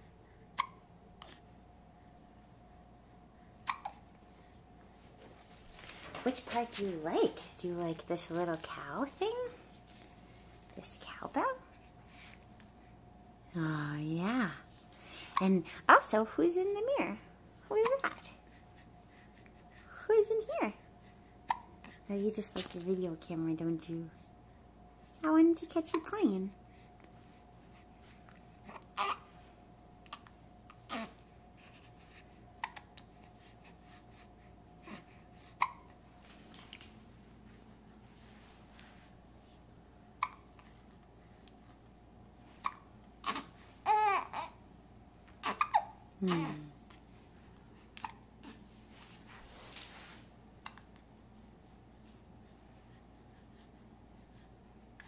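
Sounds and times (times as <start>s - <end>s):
baby hiccupping: 0.6s - 1.4s, 3.6s - 4.0s, 40.2s - 40.5s, 45.4s - 46.0s
faint clicks and rustles: 4.8s - 11.4s, 36.2s - 39.6s.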